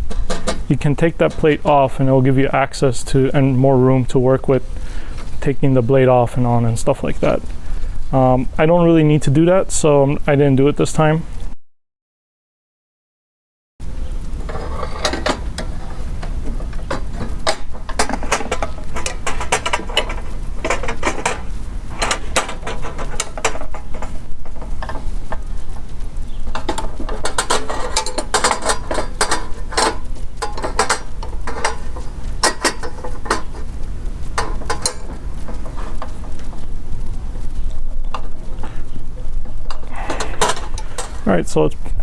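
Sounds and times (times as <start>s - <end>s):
low steady rumble: 0.0s - 11.5s, 13.8s - 42.0s
wrenches clinking and scraping: 0.1s - 1.4s, 14.4s - 25.5s, 26.5s - 36.7s, 39.6s - 41.3s.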